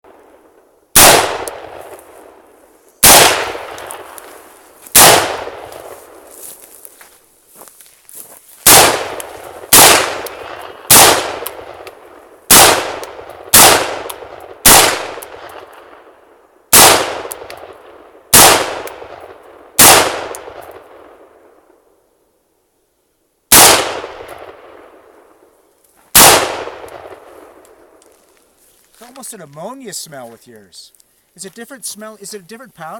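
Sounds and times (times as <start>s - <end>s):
rifle shots with echo: 1.0s - 2.3s, 3.0s - 4.3s, 4.9s - 6.3s, 8.6s - 16.0s, 16.7s - 21.6s, 23.5s - 25.4s, 26.1s - 28.0s.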